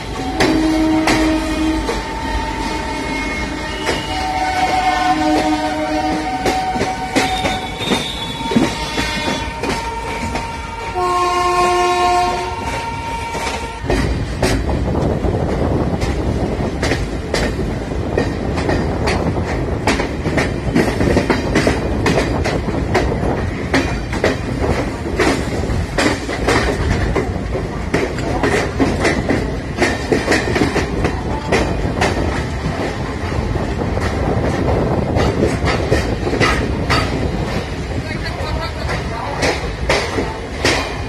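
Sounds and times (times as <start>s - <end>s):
train horn: 0.0s - 14.2s
train rumbling past: 0.0s - 41.0s
wheels clattering over rail joints: 12.4s - 41.0s.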